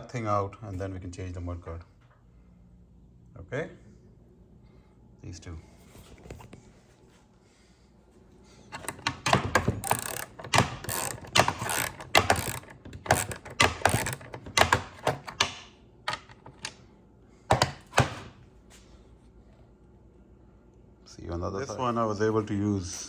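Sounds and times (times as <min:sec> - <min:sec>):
socket ratchet clicking: 0:08.8 - 0:16.8.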